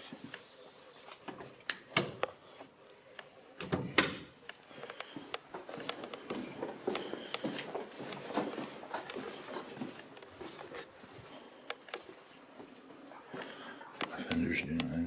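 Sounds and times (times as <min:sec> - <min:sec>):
scuffing and rustling: 0:05.5 - 0:14.3.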